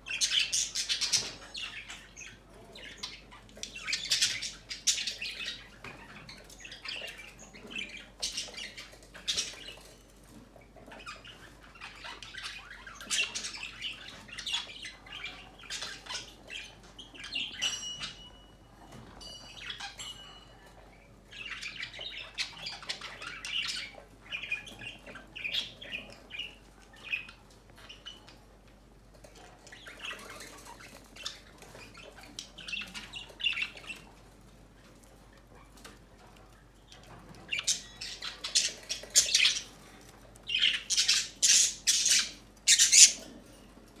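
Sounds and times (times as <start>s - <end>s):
bird squawking and chirping: 40.5s - 43.4s.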